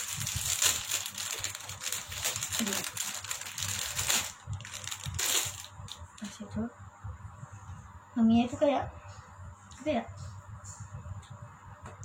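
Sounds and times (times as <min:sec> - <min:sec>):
plastic packaging crinkling: 0:00.0 - 0:06.4.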